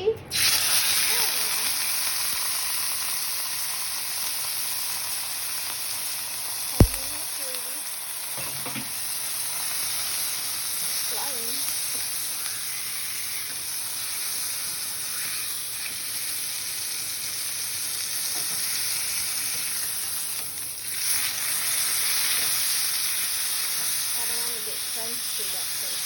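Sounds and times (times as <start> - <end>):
steak sizzling in a frying pan: 0.3 - 26.0.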